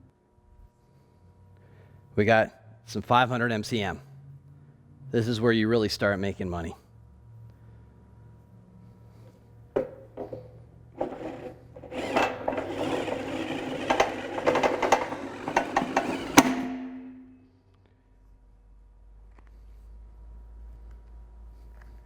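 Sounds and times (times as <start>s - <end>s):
wire stripping machine rattling: 10.2s - 17.4s.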